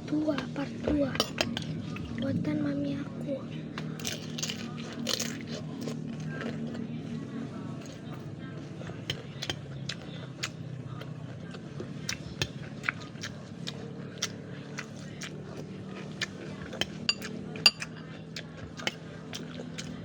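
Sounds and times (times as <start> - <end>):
cutlery clinking on plate: 16.8 - 17.9.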